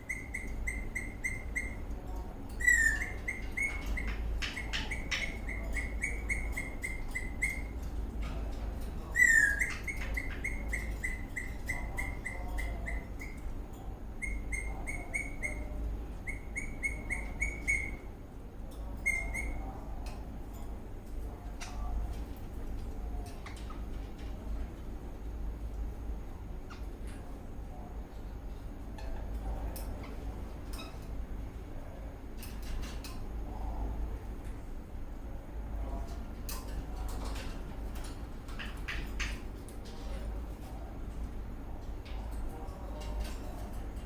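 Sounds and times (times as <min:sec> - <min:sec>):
parrot chirping: 0:00.0 - 0:01.9, 0:02.6 - 0:07.8, 0:09.1 - 0:13.4, 0:14.2 - 0:18.1, 0:19.0 - 0:19.6.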